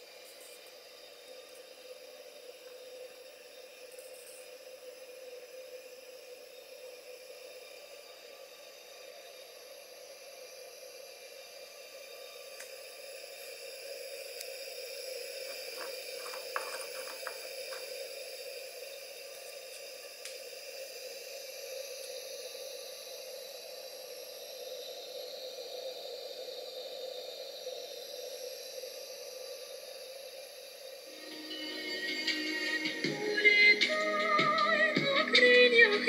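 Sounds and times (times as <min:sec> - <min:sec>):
kettle heating water: 0:00.0 - 0:35.9
small clicks: 0:15.5 - 0:17.9.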